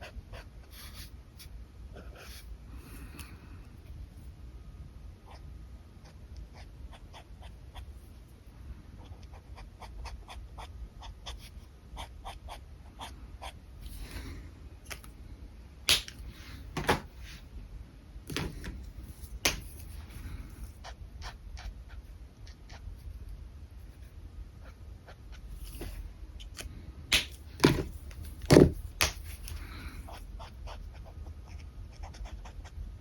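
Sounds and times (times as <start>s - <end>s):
marker scratching on paper: 0.0s - 1.1s, 2.0s - 2.5s, 29.0s - 32.8s.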